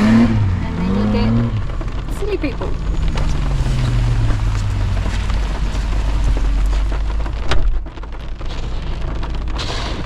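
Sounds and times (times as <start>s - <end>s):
low rumble: 0.0s - 10.0s
rain hissing: 0.0s - 10.0s.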